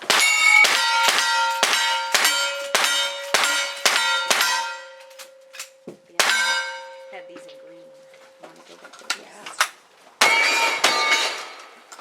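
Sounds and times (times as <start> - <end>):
gunshots: 0.0 - 4.8, 6.2 - 6.7
steel plate ringing clang: 0.0 - 8.5, 10.2 - 12.0.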